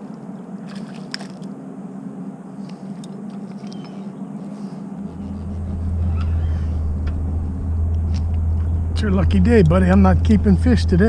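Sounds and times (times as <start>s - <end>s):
low engine hum: 0.0s - 11.0s
deep rumble: 5.0s - 11.0s
faint high chirps: 5.1s - 6.9s.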